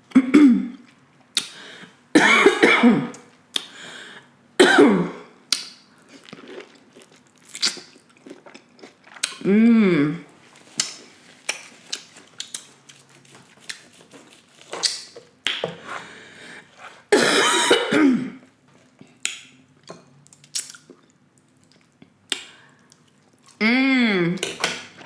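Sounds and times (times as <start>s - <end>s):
person clearing throat: 0.1s - 0.8s, 2.2s - 3.1s, 4.6s - 5.3s, 17.2s - 18.4s
chewing sounds: 10.6s - 15.6s.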